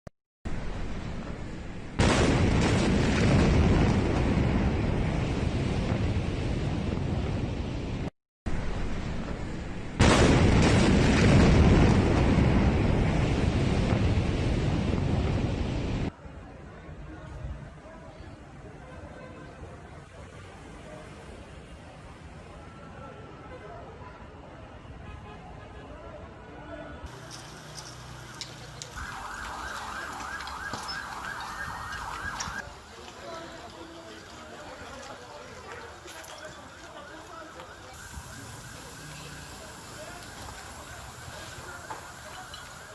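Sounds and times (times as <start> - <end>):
huge explosion roar: 0.5 - 16.1
emergency siren fast yelp: 27.2 - 32.6, 36.6 - 42.9.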